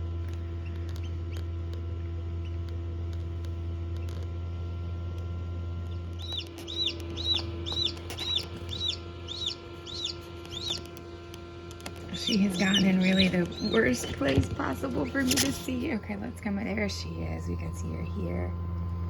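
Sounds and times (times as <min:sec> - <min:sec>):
egg incubator humming: 0:00.0 - 0:19.0
chick peeping: 0:05.8 - 0:11.0, 0:11.8 - 0:15.9.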